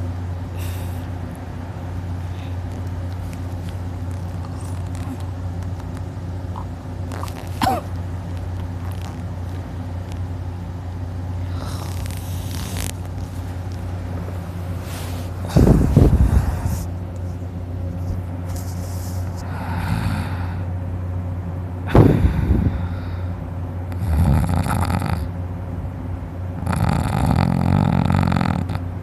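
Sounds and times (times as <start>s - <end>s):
steady low hum: 0.0s - 29.0s
man snoring and breathing: 11.4s - 12.9s, 19.4s - 20.7s, 21.9s - 25.3s, 26.6s - 28.9s.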